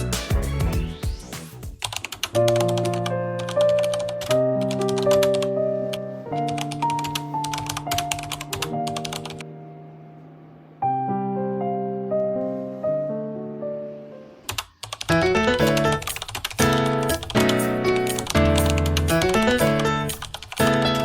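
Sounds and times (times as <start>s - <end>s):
soft keyboard chords: 0.0s - 21.0s
keyboard typing clicks: 1.8s - 5.5s, 6.4s - 9.5s, 14.5s - 21.0s.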